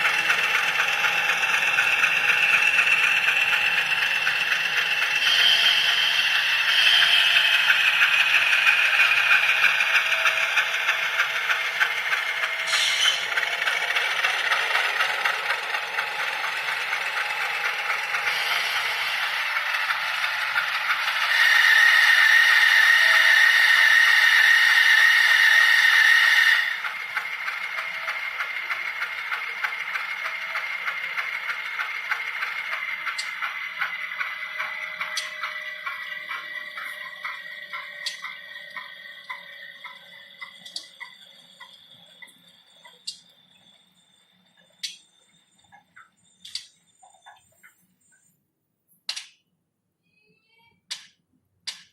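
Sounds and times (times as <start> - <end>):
model train wheels clattering: 0.0 - 48.3, 50.9 - 51.9
model train horn: 5.2 - 6.0, 21.2 - 24.0.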